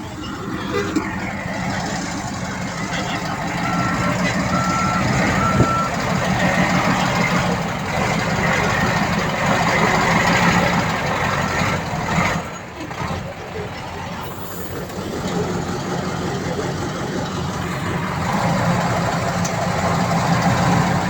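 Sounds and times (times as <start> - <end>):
loud diesel engine: 0.0 - 21.0
reversing alarm beeping: 2.8 - 7.2.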